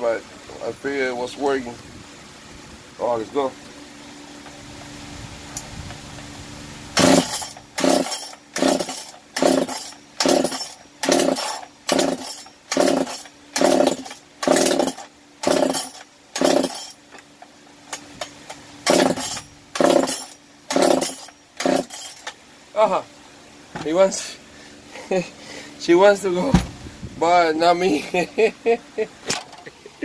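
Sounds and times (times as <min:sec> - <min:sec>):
recoil starter pulls: 0:07.0 - 0:17.3, 0:17.9 - 0:22.4.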